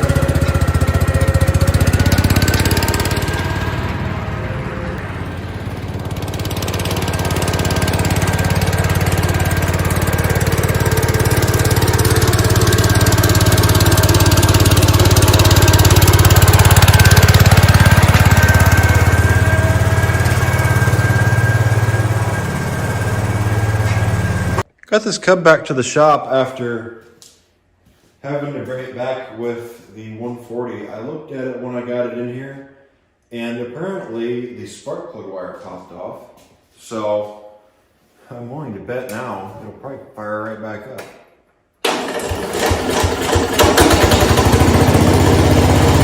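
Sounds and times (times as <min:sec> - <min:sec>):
garden tractor engine running: 0:00.0 - 0:24.6, 0:41.8 - 0:46.0.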